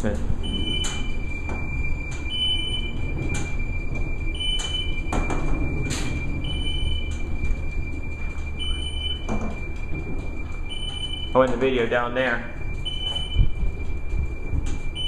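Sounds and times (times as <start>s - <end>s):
elevator low rumble: 0.0s - 15.0s
short beeps: 0.4s - 11.5s.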